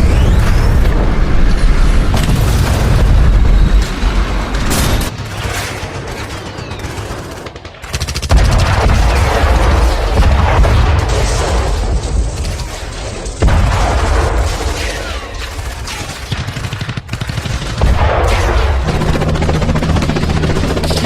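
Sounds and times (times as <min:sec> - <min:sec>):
scattered gunshots: 0:02.0 - 0:21.0
rapid machine-gun fire: 0:04.6 - 0:21.0
explosion booms: 0:13.4 - 0:14.8.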